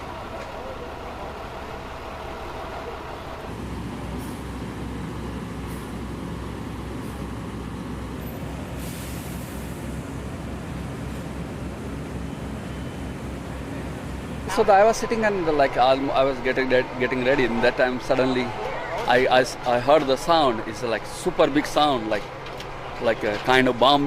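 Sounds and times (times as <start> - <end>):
truck engine idling: 0.0 - 24.0
air hiss: 8.6 - 9.9.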